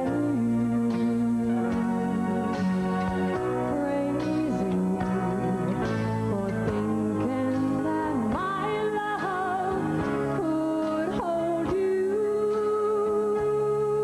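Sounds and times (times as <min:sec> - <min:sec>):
woman singing country ballad: 0:00.0 - 0:01.9, 0:03.4 - 0:14.0
band accompaniment: 0:00.8 - 0:11.8.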